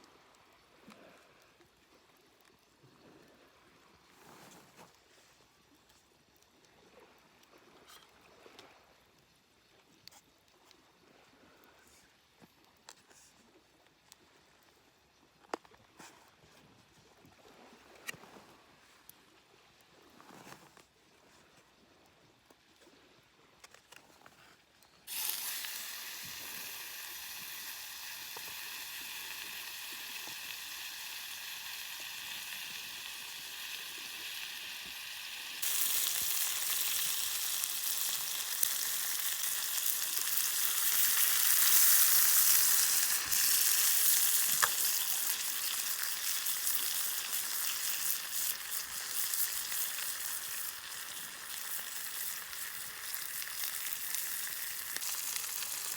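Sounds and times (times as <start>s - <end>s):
meat sizzling over fire: 25.1s - 55.9s.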